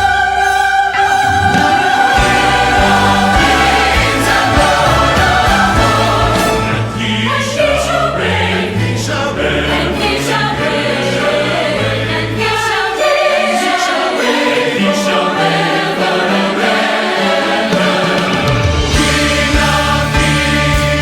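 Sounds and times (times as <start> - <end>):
orchestra playing: 0.0 - 8.6
choir singing: 0.0 - 21.0.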